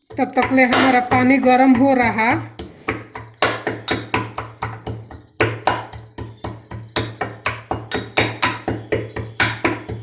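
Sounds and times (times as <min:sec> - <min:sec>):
pestle pounding in mortar: 0:00.0 - 0:10.0.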